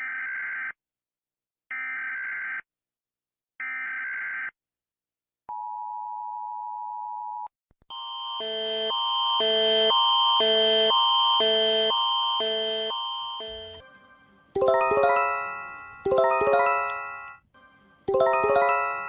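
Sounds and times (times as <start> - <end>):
alternating multi-tone alert: 14.6 - 17.4, 18.1 - 19.0
steady alert tone: 18.1 - 19.0.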